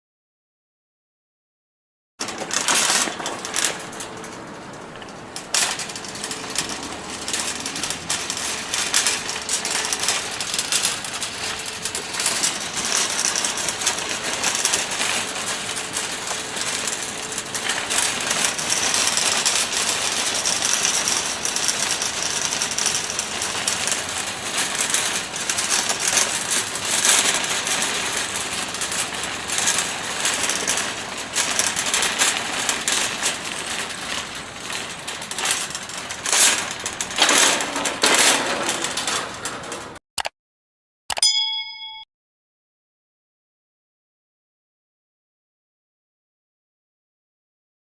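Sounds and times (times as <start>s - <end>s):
shopping cart rattling: 2.2s - 40.0s.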